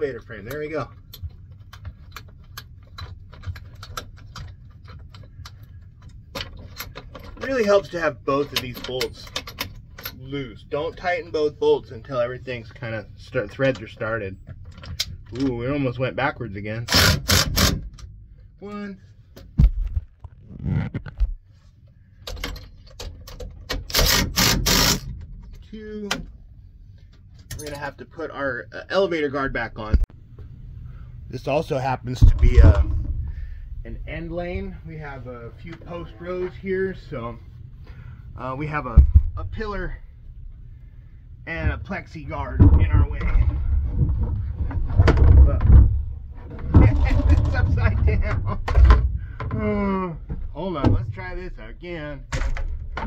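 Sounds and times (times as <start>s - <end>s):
low hum: 23.4s - 53.0s.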